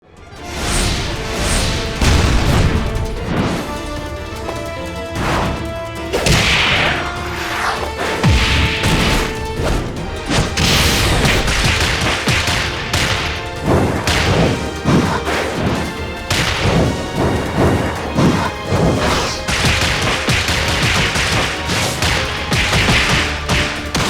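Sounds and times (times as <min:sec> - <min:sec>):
music: 0:00.0 - 0:24.0
crashes: 0:00.4 - 0:24.0
whooshes: 0:00.4 - 0:24.0
punch and kick impacts: 0:06.2 - 0:07.0, 0:08.2 - 0:24.0.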